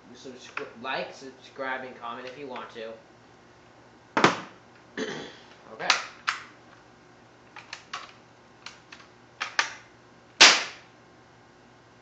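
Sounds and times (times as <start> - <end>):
air rifle shot pop: 10.4 - 10.8.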